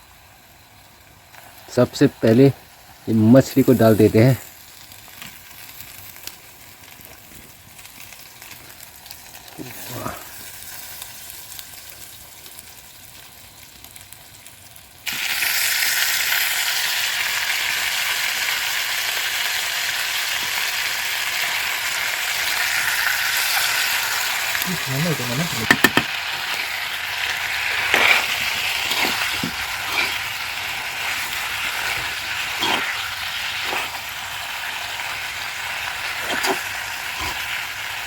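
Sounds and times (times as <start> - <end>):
faint hiss: 0.0 - 12.6
fish sizzling in hot oil: 0.0 - 38.0.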